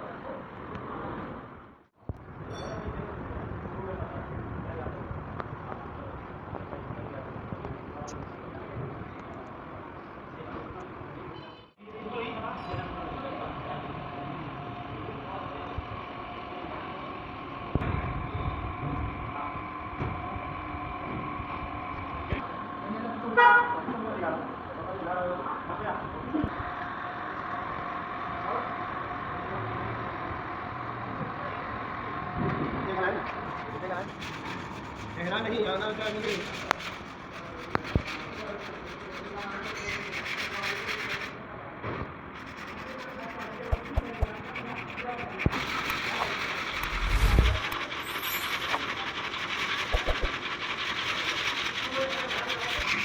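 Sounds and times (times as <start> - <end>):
rubbing scraping noise: 33.2 - 41.4, 42.4 - 53.0
vehicle engine running: 45.4 - 50.4
low rumbling: 46.7 - 48.6
sharp knock: 49.9 - 50.3.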